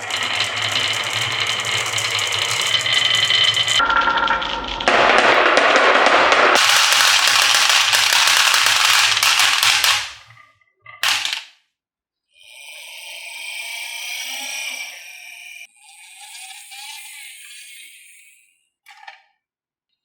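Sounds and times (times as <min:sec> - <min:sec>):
marbles clattering on wooden track: 0:00.0 - 0:04.8, 0:06.6 - 0:10.3, 0:11.0 - 0:11.5.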